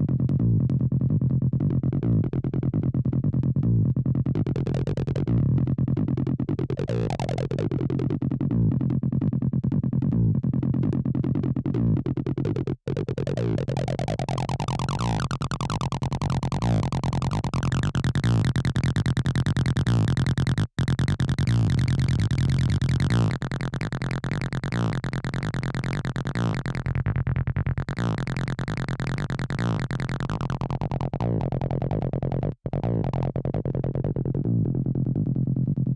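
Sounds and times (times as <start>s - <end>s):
fast repeating synthesizer pattern: 27.9s - 30.9s.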